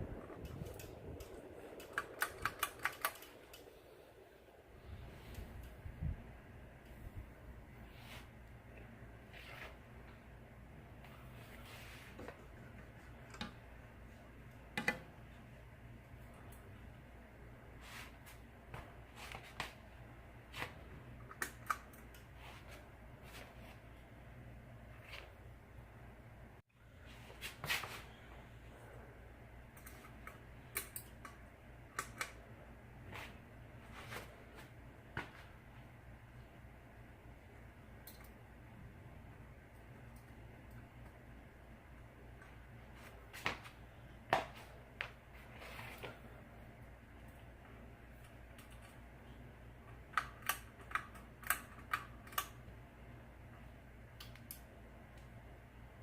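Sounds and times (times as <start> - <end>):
ceiling fan motor humming: 0.0 - 56.0
sharp clicks: 0.4 - 3.8.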